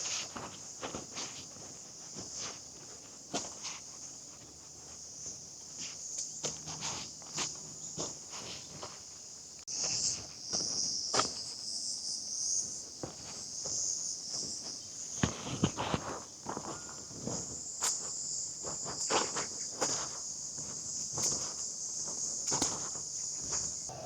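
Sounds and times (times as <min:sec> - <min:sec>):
footsteps walking: 0:00.0 - 0:09.1
insects chirping: 0:00.0 - 0:24.0.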